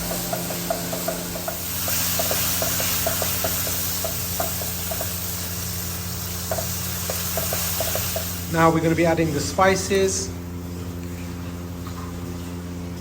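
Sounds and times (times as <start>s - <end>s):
onions sizzling in oil: 0.0s - 8.8s
steady low hum: 0.0s - 13.0s.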